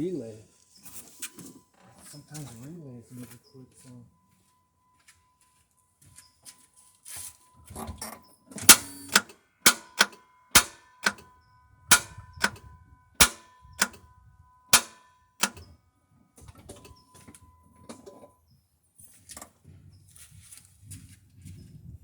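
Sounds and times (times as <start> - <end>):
starter motor clicking: 8.6 - 11.3, 11.9 - 14.0, 14.8 - 15.7.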